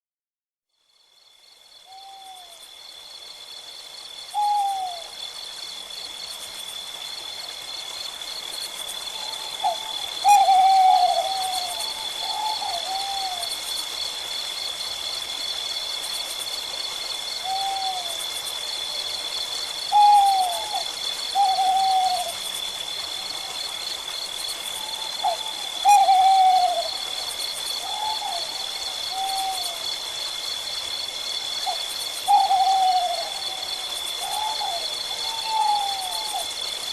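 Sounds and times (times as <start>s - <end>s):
owl hooting: 1.8s - 2.6s, 4.3s - 5.2s, 9.1s - 13.5s, 17.4s - 18.2s, 19.9s - 22.4s, 24.8s - 27.0s, 27.8s - 29.8s, 31.6s - 36.5s.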